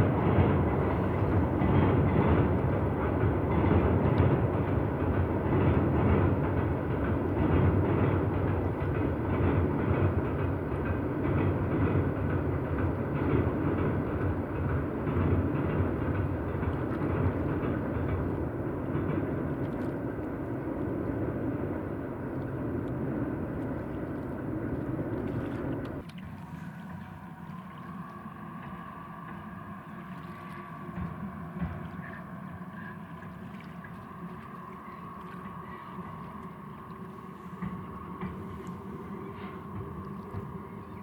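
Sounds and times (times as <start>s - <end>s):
train rumbling across bridge: 0.0s - 26.0s, 26.6s - 41.0s
wheels clattering over rail joints: 0.0s - 26.0s.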